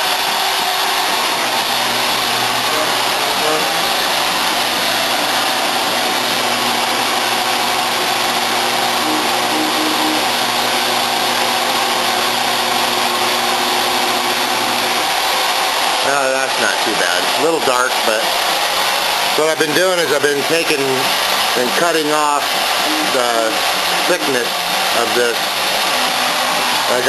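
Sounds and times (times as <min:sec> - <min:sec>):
machine motor whining: 0:01.0 - 0:15.3.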